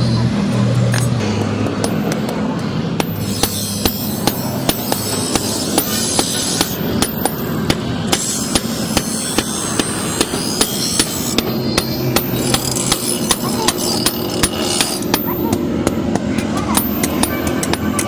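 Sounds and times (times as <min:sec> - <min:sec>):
steady background noise: 0:00.0 - 0:18.0
hammer striking metal on anvil: 0:00.5 - 0:18.0.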